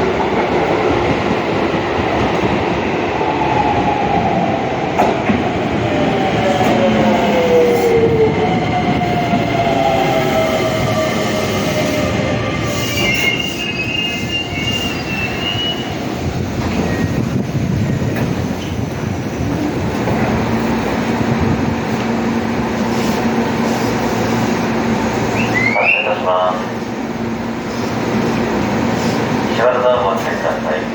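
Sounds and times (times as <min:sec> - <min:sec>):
train rumbling: 0:00.0 - 0:30.9
train wheels squealing: 0:12.6 - 0:16.0.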